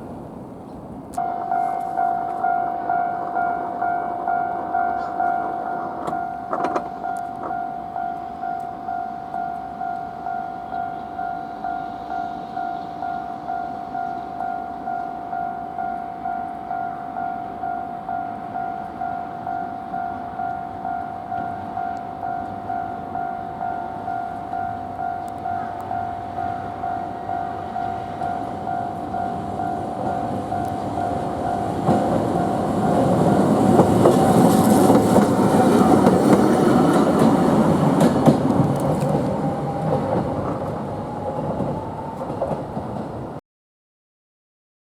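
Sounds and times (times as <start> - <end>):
tram running noise: 0.0 - 43.4
crossing warning bell ringing: 1.2 - 43.4.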